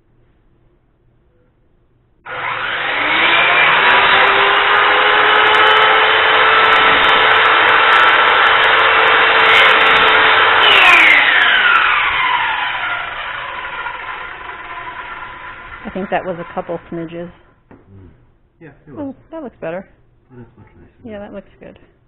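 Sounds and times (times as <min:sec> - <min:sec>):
radial arm saw cutting wood: 0:02.3 - 0:16.9
saw motor winding down: 0:02.3 - 0:16.9.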